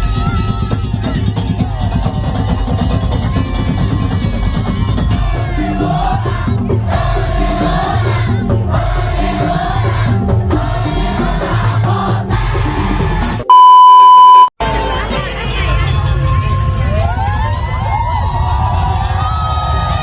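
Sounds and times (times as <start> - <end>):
drum ensemble music: 0.0 - 14.5
loud electronic beep: 13.5 - 14.5.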